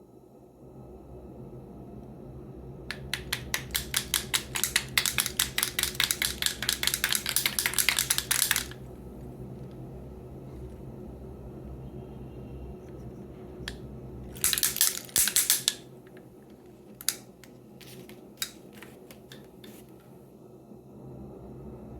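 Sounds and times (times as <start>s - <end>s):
wooden rattle shaken: 2.9s - 8.8s, 14.4s - 15.8s.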